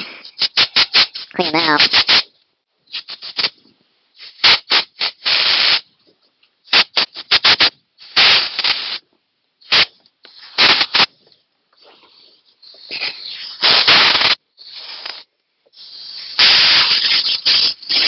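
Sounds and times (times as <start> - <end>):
hissing: 11.8 - 18.0.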